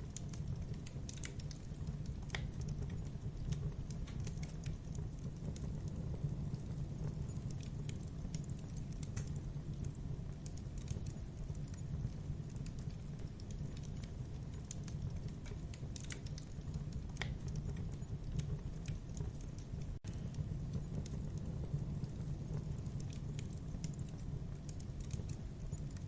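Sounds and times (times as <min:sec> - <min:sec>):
burning wood crackling: 0:00.0 - 0:26.0
campfire flame rumble: 0:00.0 - 0:26.0.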